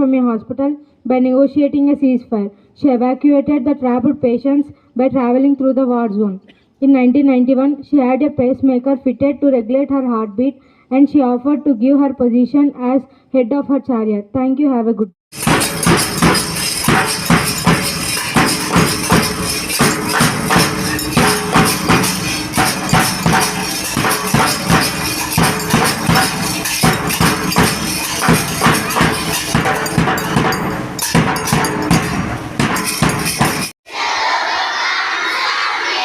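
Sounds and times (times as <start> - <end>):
jingling percussion: 15.3 - 33.8
music with percussive beat: 15.3 - 33.8.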